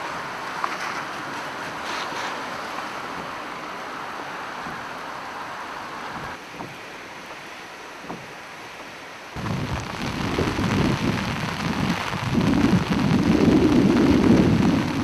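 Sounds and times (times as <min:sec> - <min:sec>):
heavy rain: 0:00.0 - 0:15.0
rushing river: 0:00.0 - 0:15.0
wind on microphone: 0:09.4 - 0:15.0.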